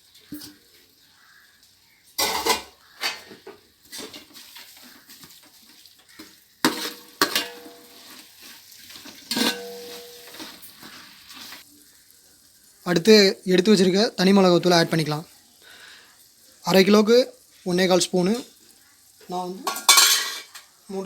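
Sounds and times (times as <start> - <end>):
low frying sizzle: 0.0 - 21.0
metal spoon clanking in pot: 2.2 - 3.3, 6.2 - 8.2, 9.0 - 10.8, 19.6 - 20.7.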